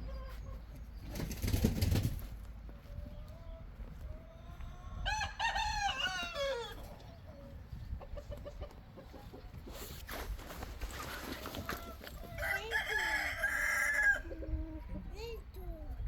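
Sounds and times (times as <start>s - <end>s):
rooster crowing: 5.0s - 6.8s, 12.3s - 14.3s
hen clucking: 5.8s - 10.0s.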